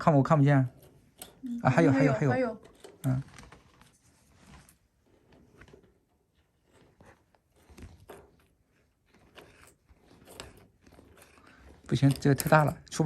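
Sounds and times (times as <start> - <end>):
wire hook scraping and clicking: 0.4 - 1.5, 2.4 - 3.9, 6.6 - 13.0.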